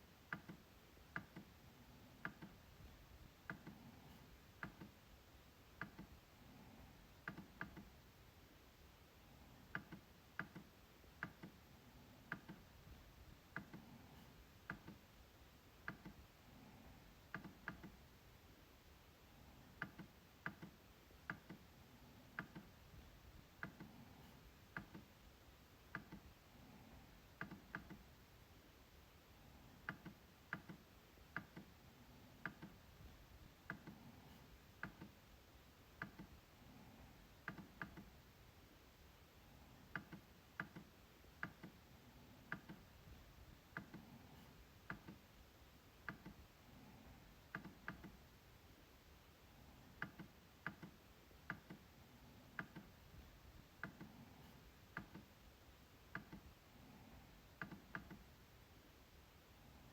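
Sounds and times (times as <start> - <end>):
trackpad clicks: 0.3 - 1.5, 2.2 - 2.6, 4.6 - 5.0, 7.2 - 7.9, 9.7 - 11.6, 13.5 - 15.0, 15.8 - 16.2, 19.7 - 21.6, 22.3 - 22.8, 25.9 - 26.3, 27.4 - 28.1, 29.8 - 31.7, 34.8 - 35.2, 37.4 - 38.1, 39.9 - 41.8, 42.5 - 42.8, 43.7 - 45.2, 46.0 - 46.4, 50.0 - 51.8, 52.5 - 53.0, 54.9 - 55.3, 56.1 - 56.5, 57.6 - 58.2.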